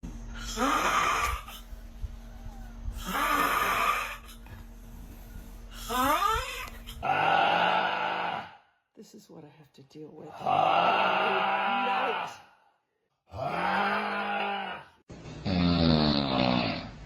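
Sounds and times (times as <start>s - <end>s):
person snoring: 0.4s - 1.6s, 3.0s - 4.4s, 13.3s - 17.0s.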